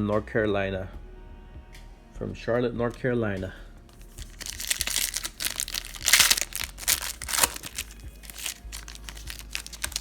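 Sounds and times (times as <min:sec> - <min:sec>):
card wrapper crinkling: 0:03.9 - 0:10.0.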